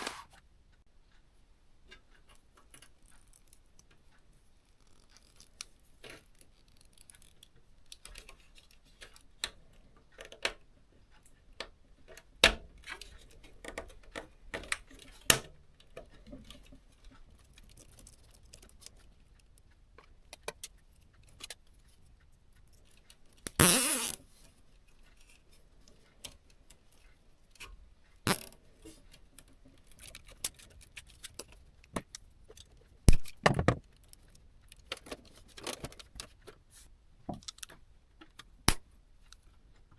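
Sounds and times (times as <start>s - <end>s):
brief rasping noise: 23.6s - 24.2s.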